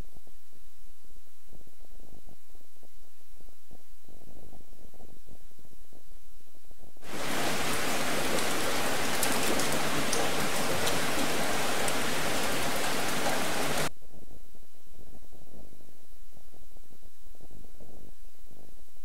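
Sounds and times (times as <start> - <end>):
crackling raindrops: 7.0 - 13.9
steady rain hiss: 7.0 - 13.9.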